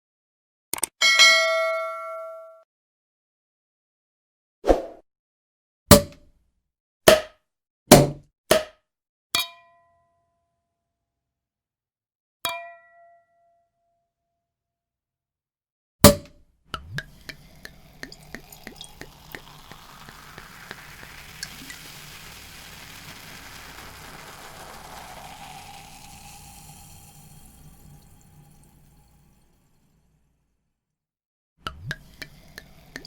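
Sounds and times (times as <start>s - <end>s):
cork cracking: 16.8s - 28.2s, 31.7s - 33.0s
champagne fizzing into a glass: 16.8s - 30.3s, 31.8s - 33.0s.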